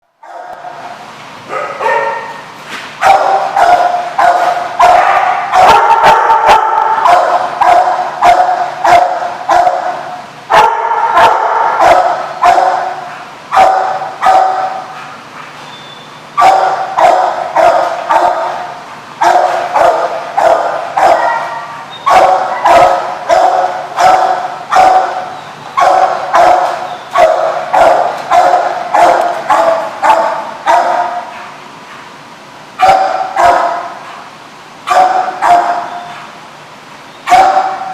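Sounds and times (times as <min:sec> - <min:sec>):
dog barking: 0:00.2 - 0:00.9, 0:01.5 - 0:15.1, 0:16.4 - 0:31.4, 0:32.8 - 0:34.0, 0:34.9 - 0:36.1, 0:37.2 - 0:37.9.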